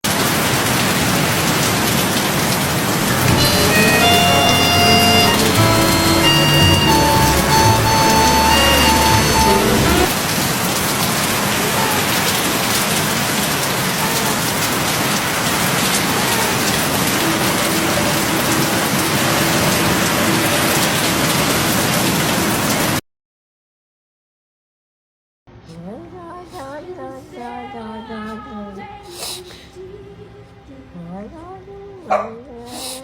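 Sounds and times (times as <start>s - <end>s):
heavy rain pouring: 0.1s - 23.0s.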